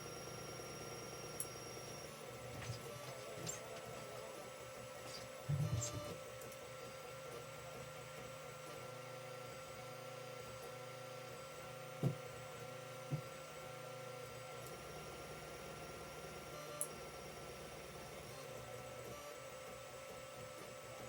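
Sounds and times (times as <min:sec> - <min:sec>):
three d printer humming: 0:00.0 - 0:21.0
short thumps: 0:05.4 - 0:06.1.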